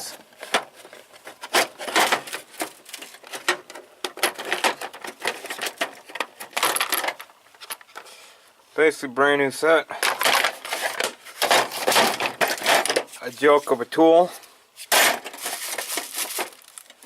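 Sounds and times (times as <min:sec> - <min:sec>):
metal tools rattling in drawer: 0:00.4 - 0:07.8, 0:10.0 - 0:13.2, 0:14.9 - 0:16.8.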